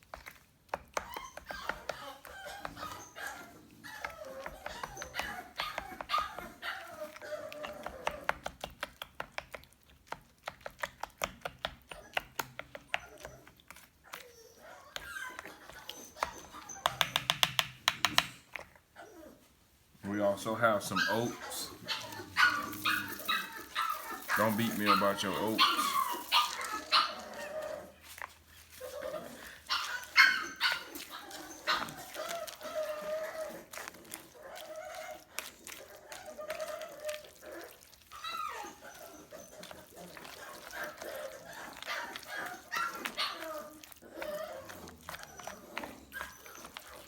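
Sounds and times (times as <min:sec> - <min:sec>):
utensil tapping bowl: 0:16.2 - 0:18.6
dog barking: 0:20.9 - 0:27.3.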